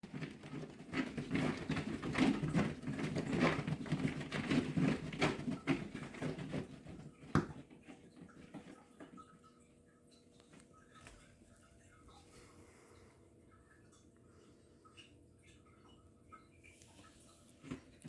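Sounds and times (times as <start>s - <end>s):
cat exercise wheel rumbling: 0.0s - 9.4s.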